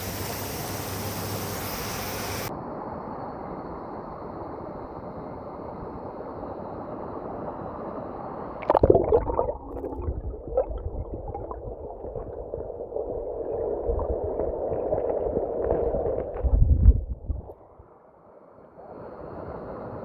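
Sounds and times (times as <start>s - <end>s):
bubbly gurgling water: 8.6s - 17.5s.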